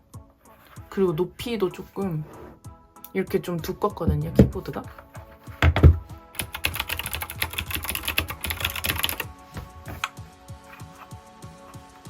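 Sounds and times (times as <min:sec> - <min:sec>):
mechanical keyboard typing: 0:06.4 - 0:09.3.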